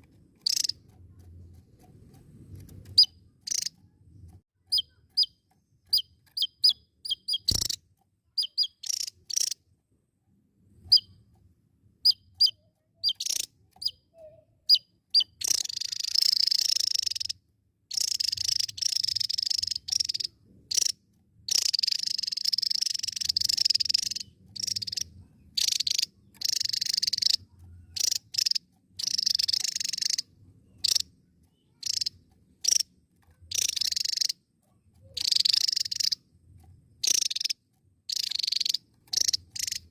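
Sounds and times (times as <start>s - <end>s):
bird singing: 0.4s - 0.8s, 2.9s - 3.8s, 4.6s - 9.6s, 10.8s - 11.2s, 12.0s - 39.9s.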